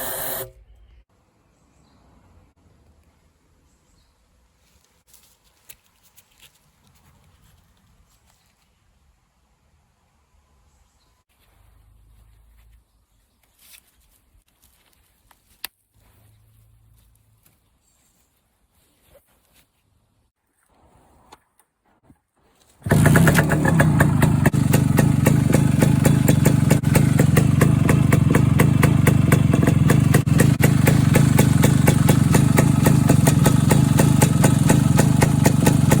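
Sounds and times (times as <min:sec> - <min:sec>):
faint handling noises: 0:04.6 - 0:08.9, 0:11.3 - 0:22.8
two-stroke motorcycle engine running: 0:22.8 - 0:36.0.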